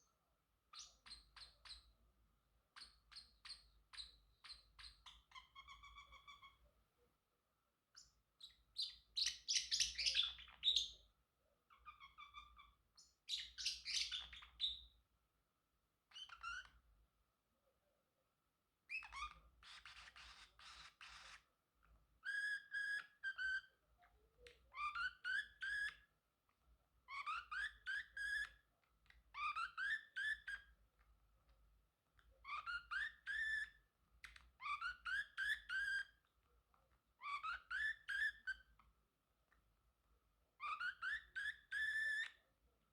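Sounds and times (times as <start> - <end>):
parrotlet chirping: 0.7 - 2.0, 2.7 - 6.6, 7.9 - 11.1, 11.7 - 15.0, 16.1 - 16.8, 18.9 - 21.5, 22.2 - 23.8, 24.4 - 26.1, 27.0 - 30.8, 32.4 - 36.3, 37.2 - 38.9, 40.6 - 42.4
harsh parrotlet calls: 11.7 - 14.9, 18.9 - 21.4.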